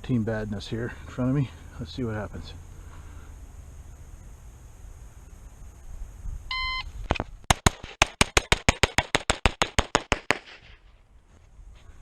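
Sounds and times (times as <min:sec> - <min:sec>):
shot timer beep: 0:06.5 - 0:06.9
pistol firing rapid shots: 0:07.5 - 0:10.7.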